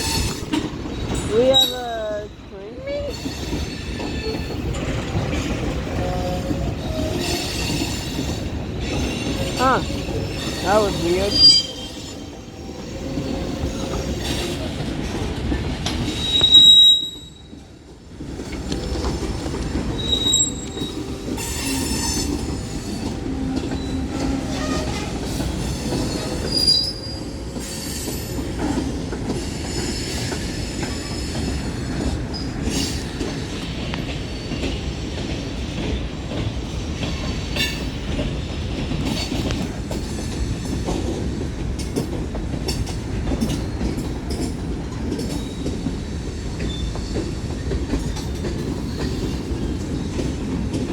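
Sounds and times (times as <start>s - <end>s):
freight train cars rumbling: 0.0s - 50.9s
wheel flange squeal: 11.3s - 14.6s, 16.1s - 17.5s, 20.0s - 23.0s, 23.7s - 28.2s.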